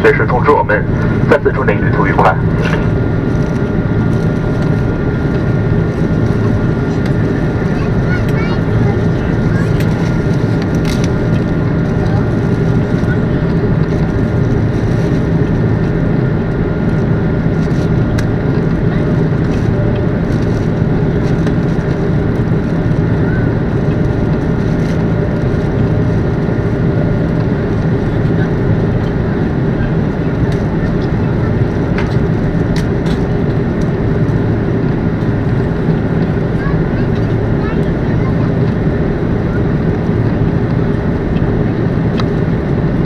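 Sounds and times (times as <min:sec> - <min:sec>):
jet engine cabin noise: 0:00.0 - 0:43.0.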